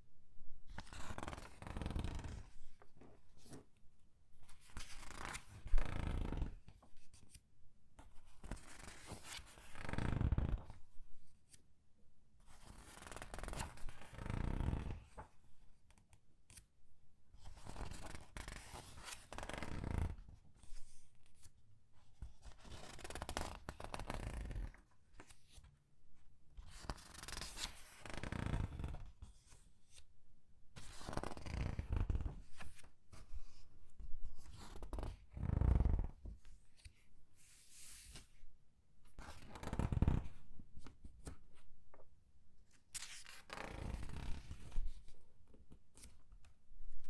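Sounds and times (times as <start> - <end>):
paper pages turning: 43.0 - 44.7.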